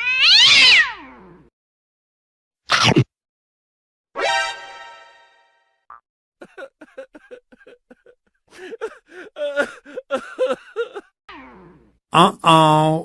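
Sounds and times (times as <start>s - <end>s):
person laughing: 6.4s - 11.1s.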